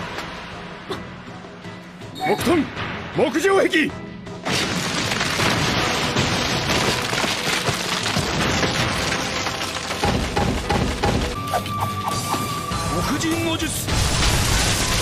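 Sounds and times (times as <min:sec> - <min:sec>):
wood bursting and cracking: 0:04.4 - 0:11.8, 0:13.9 - 0:15.0.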